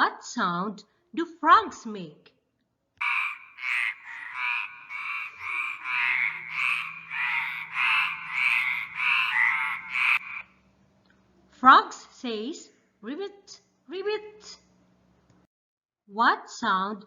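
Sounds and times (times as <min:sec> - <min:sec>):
frog croaking: 0:03.0 - 0:10.5.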